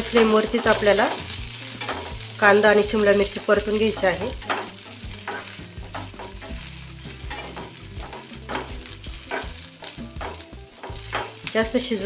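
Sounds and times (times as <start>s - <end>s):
vegetables sizzling in hot oil: 0.0s - 12.0s
utensil scraping a pan: 0.2s - 11.6s.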